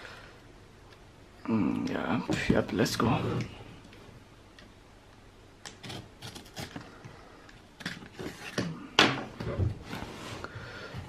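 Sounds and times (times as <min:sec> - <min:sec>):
cardboard box scrapes and rustles: 0:09.8 - 0:10.5.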